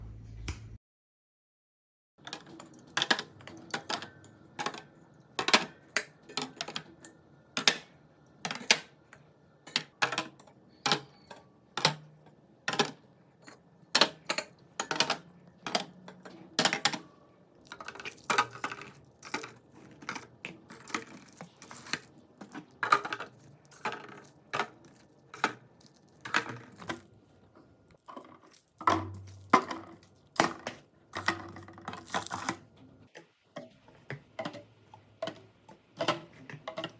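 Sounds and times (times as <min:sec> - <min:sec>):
containers clacking in refrigerator: 0:02.2 - 0:27.1, 0:28.0 - 0:32.8, 0:33.6 - 0:36.9.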